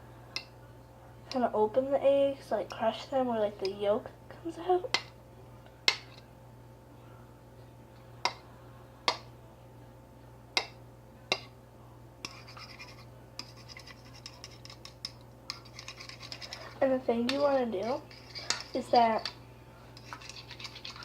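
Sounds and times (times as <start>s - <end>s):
fork tapping against a bowl: 10.6s - 11.5s
fork scraping around a bowl: 12.2s - 21.0s.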